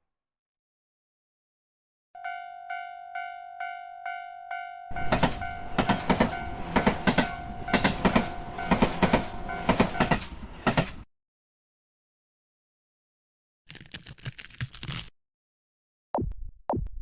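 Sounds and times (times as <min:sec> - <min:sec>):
crossing signal bell ringing: 0:02.2 - 0:10.2
train wheels clacking on rails: 0:04.9 - 0:11.0.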